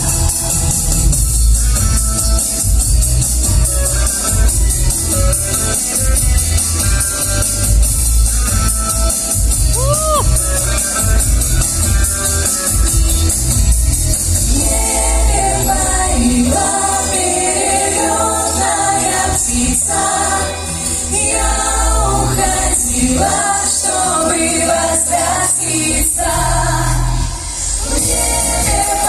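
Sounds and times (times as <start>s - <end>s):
instrumental backing with bass: 0.0s - 29.0s
vocal ensemble singing in harmony: 14.2s - 29.0s.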